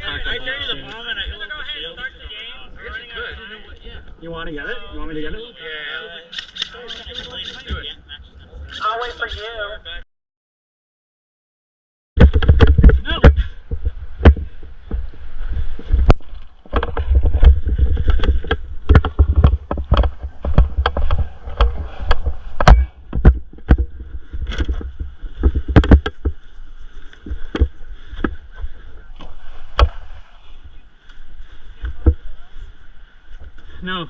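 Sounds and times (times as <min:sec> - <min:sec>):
low rumble on microphone: 0:12.2 - 0:33.6.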